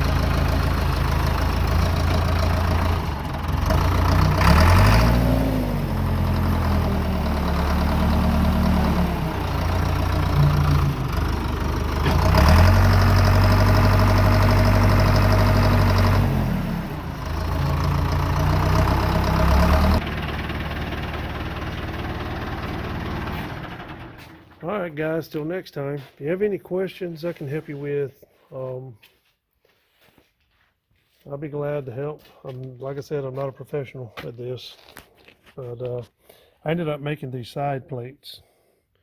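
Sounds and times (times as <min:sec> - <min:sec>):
backhoe engine revving: 0:00.0 - 0:24.7.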